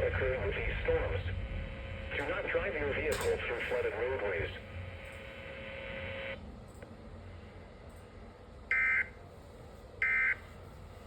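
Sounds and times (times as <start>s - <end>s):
quiet radio hum: 0.0s - 7.0s.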